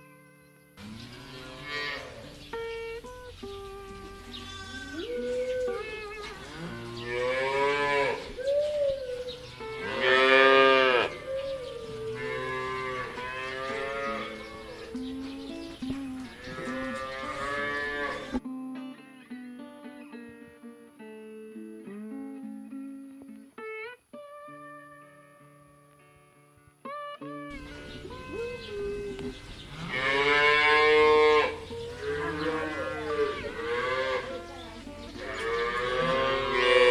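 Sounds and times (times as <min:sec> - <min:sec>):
plucked guitar music: 0:00.0 - 0:36.9
cattle mooing: 0:00.8 - 0:02.4, 0:04.2 - 0:08.4, 0:09.1 - 0:15.4, 0:16.2 - 0:18.4, 0:27.6 - 0:36.9.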